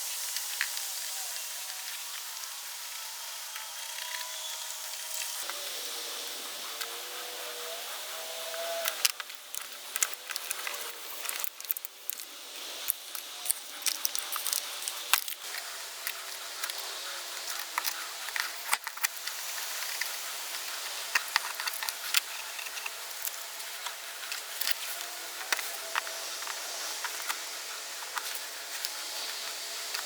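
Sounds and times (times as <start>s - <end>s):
razor blade scraping plastic: 6.7s - 30.0s.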